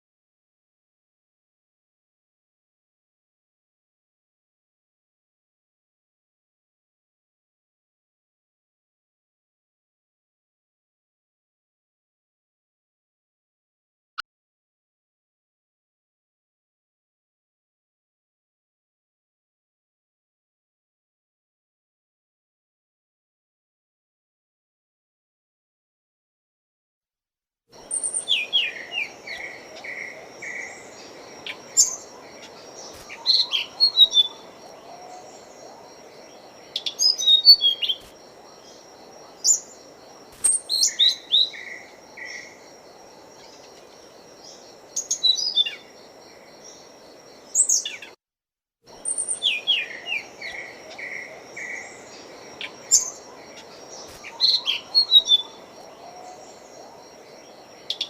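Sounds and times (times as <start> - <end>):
songbird chirping and twittering: 27.8 - 48.2, 48.9 - 58.0.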